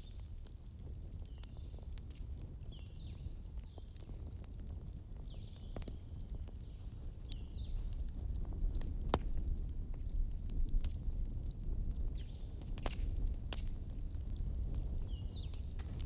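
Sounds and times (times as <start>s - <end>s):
bonfire crackling and popping: 0.0s - 16.0s
small birds chirping: 1.2s - 1.8s, 2.6s - 4.1s, 4.8s - 8.9s, 15.0s - 15.9s.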